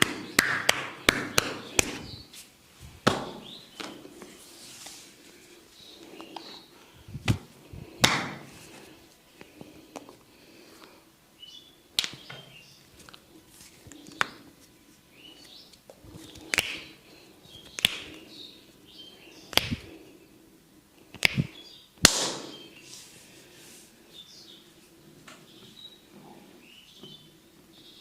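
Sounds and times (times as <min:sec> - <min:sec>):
hands slapping head and neck: 0:00.0 - 0:02.2, 0:03.0 - 0:04.0, 0:07.2 - 0:08.5, 0:12.0 - 0:12.3, 0:16.2 - 0:16.9, 0:17.6 - 0:18.2, 0:19.5 - 0:19.9, 0:21.2 - 0:22.6.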